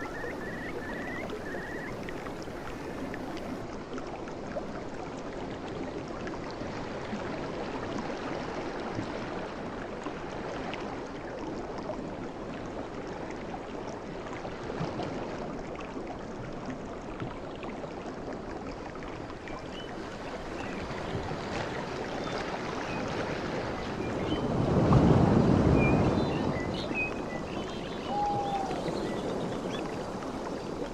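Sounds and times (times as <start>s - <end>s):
sea waves washing on shore: 0.0s - 3.7s, 19.3s - 30.9s.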